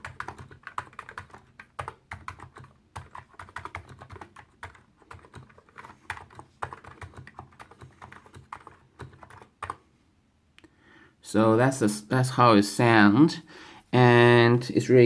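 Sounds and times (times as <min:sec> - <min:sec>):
keyboard typing clicks: 0:00.0 - 0:09.8.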